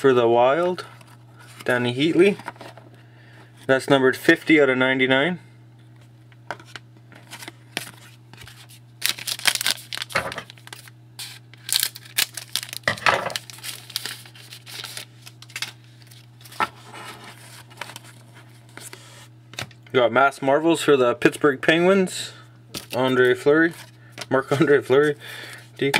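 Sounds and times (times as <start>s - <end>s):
cards handled rustling: 6.6s - 19.7s
wrapper tearing and crinkling: 9.0s - 16.6s.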